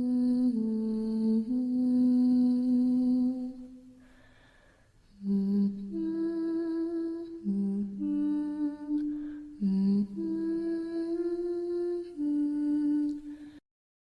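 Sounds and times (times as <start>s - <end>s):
quiet breath: 3.5s - 6.4s, 7.2s - 10.4s, 12.0s - 13.6s
woman humming a lullaby: 5.2s - 9.0s, 9.6s - 13.2s.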